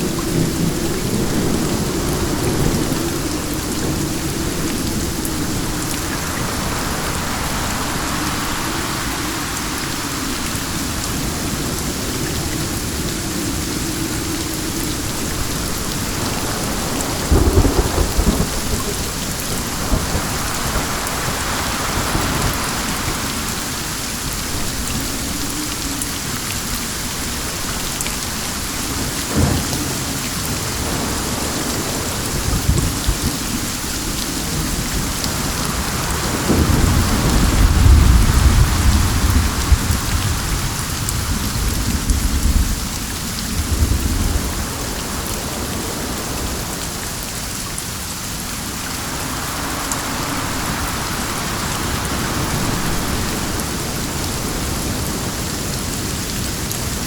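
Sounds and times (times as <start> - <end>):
thunder rumbling: 0.0 - 26.0, 27.0 - 47.3, 48.7 - 57.0
steady rain falling: 0.0 - 57.0
sharp thunder crack: 16.1 - 21.5.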